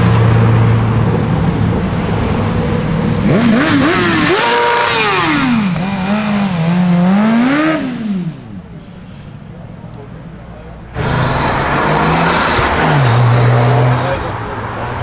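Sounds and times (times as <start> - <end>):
vehicle engine revving: 0.0 - 8.7, 10.9 - 15.0.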